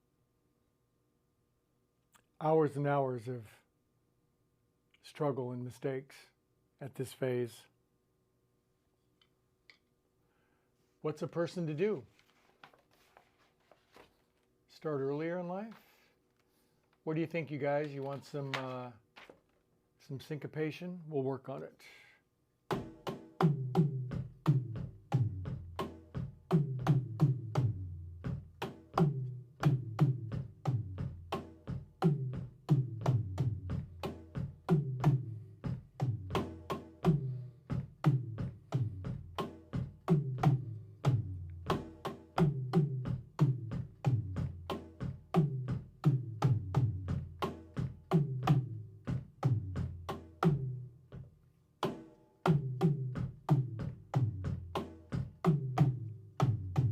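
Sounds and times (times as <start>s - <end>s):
drum kit groove: 22.7s - 56.9s.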